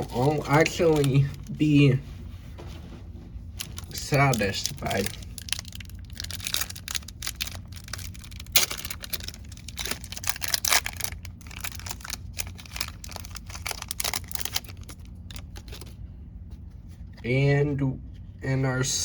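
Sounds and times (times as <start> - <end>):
foil card pack crinkling: 0.0 - 2.0, 3.6 - 16.0.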